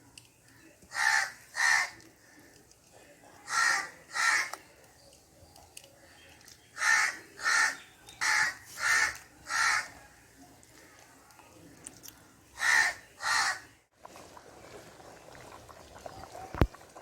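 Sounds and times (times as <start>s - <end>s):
crow cawing: 0.9s - 2.0s, 3.5s - 4.5s, 6.8s - 9.9s, 12.6s - 13.6s.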